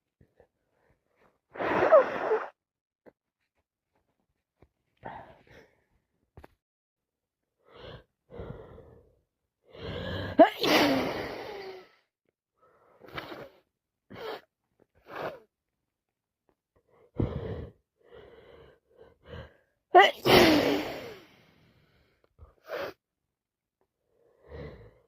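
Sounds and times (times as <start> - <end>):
person sneezing: 10.4 - 11.8, 20.0 - 21.3.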